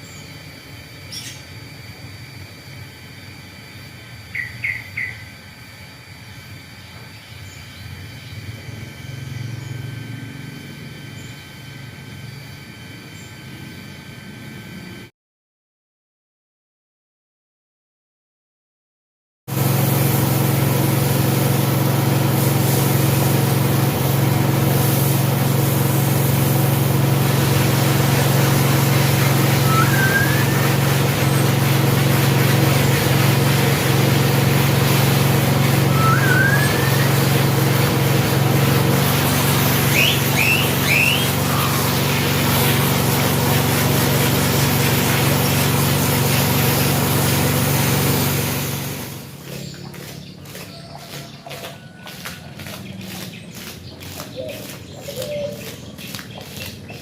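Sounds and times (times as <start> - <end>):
carpet washing machine humming: 19.5 - 57.0
short high chirps: 39.8 - 42.0.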